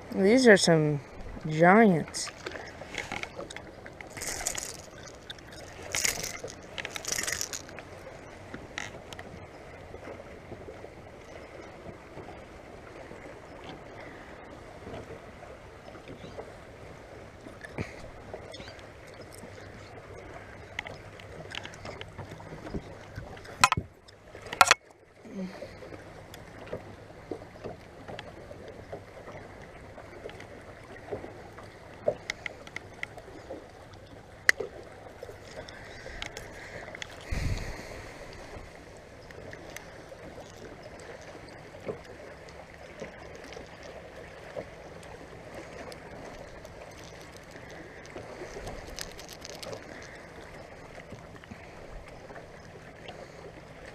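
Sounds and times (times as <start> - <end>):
boat low hum: 0.0 - 53.9
clicks and knocks: 23.6 - 23.9, 24.5 - 24.8.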